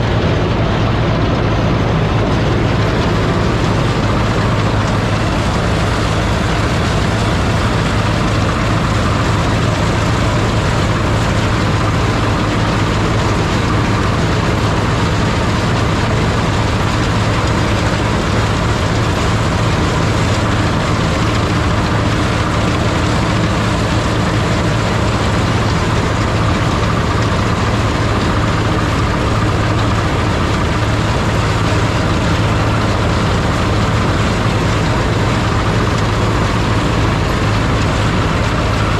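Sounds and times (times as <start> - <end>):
diesel engine running under load: 0.0 - 38.9.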